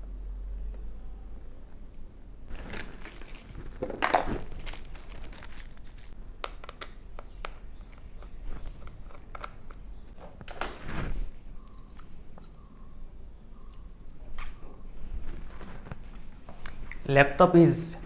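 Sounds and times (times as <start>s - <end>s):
rustling of small objects: 2.5s - 6.2s.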